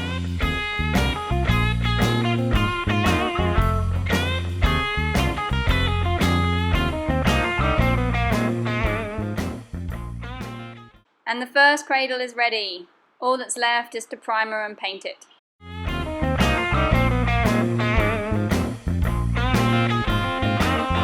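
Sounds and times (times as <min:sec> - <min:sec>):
bluesy electric guitar melody: 0:00.0 - 0:10.9, 0:15.7 - 0:21.0
steady bass: 0:00.0 - 0:10.9, 0:15.6 - 0:21.0.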